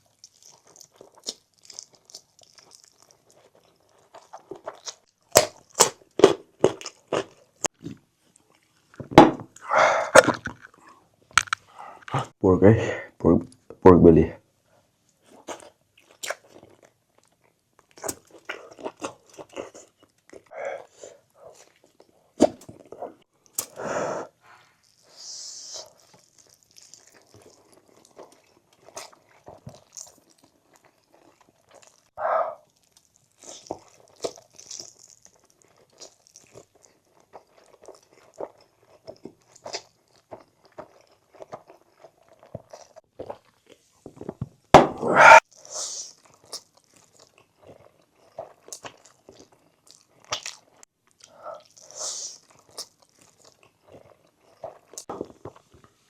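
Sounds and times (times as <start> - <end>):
chewing and crunching: 0.0 - 12.3, 15.1 - 23.8, 24.4 - 44.5, 45.3 - 56.0
wet mouth clicks: 15.5 - 16.4, 23.5 - 23.8, 50.3 - 50.6.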